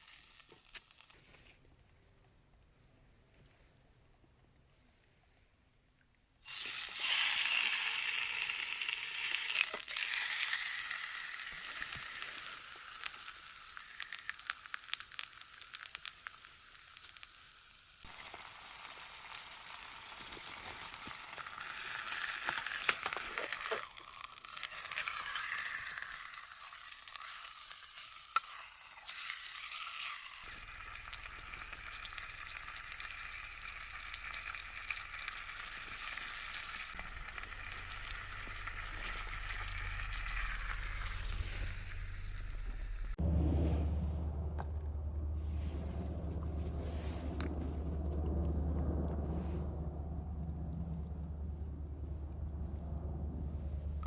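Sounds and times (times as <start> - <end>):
meat sizzling in a frying pan: 6.5 - 43.1.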